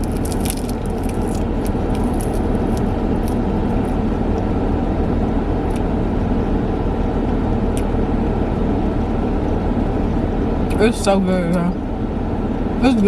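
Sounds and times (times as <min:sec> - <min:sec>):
car engine idling: 0:00.0 - 0:05.8.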